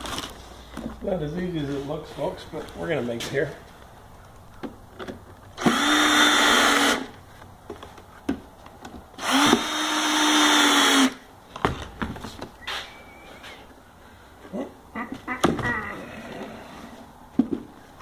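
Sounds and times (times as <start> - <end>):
cordless drill driving screws: 5.6 - 7.1, 9.2 - 11.2.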